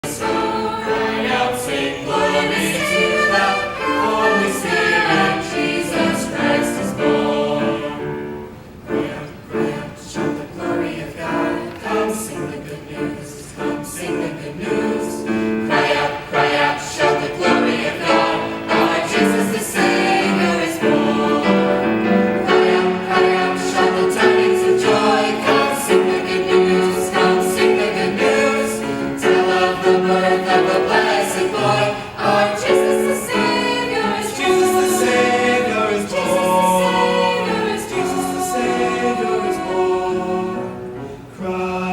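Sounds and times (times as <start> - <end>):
choir singing gospel song: 0.0 - 41.9
instrumental accompaniment: 15.6 - 41.1.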